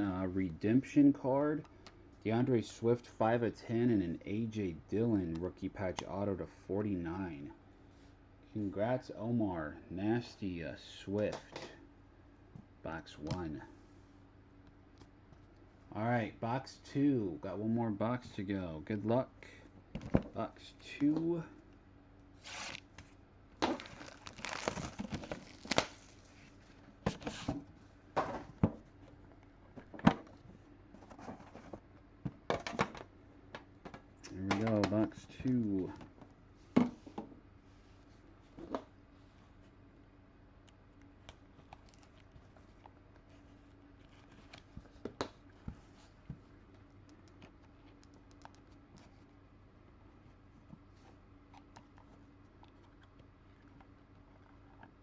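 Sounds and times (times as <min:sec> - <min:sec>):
low steady hum: 0:00.0 - 0:55.0
packaging torn and crinkled: 0:22.4 - 0:22.8, 0:23.6 - 0:26.4.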